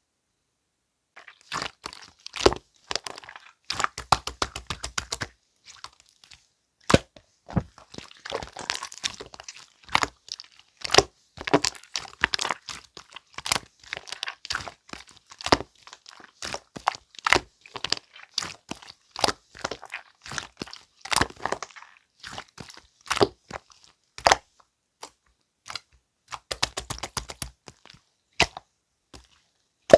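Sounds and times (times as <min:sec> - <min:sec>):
slime crackling and popping: 0:25.7 - 0:27.6.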